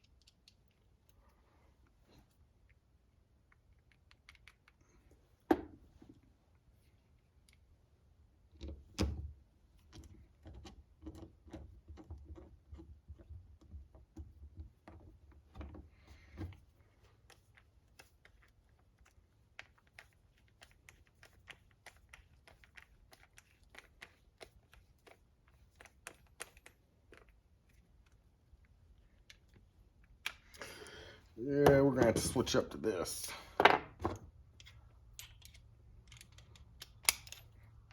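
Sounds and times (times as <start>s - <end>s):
small tools clicking and tapping: 34.6s - 37.9s.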